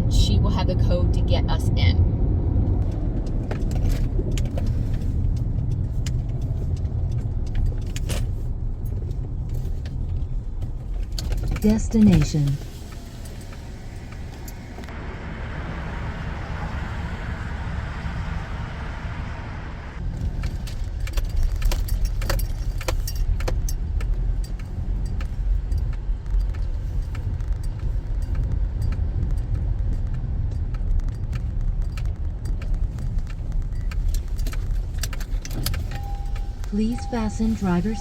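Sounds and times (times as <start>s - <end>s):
low road rumble: 0.0s - 38.0s
car interior clicks and rattles: 2.6s - 15.0s, 20.0s - 38.0s.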